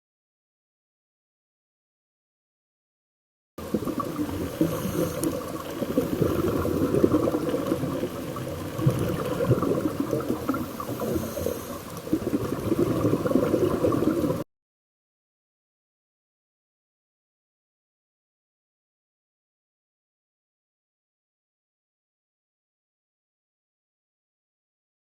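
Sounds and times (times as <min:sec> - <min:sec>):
muffled underwater bubbling: 0:03.6 - 0:14.4.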